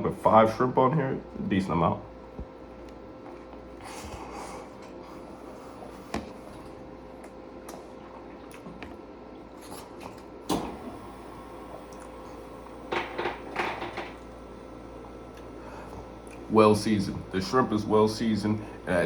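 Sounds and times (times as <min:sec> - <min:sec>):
faint steady hum: 0:00.0 - 0:19.0
person chewing food: 0:02.6 - 0:10.4, 0:14.2 - 0:16.5.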